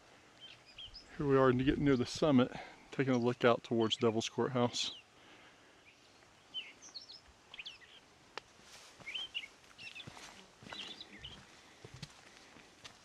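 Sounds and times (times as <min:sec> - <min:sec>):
songbird twittering: 0:00.4 - 0:02.1, 0:05.8 - 0:08.1, 0:09.0 - 0:11.5.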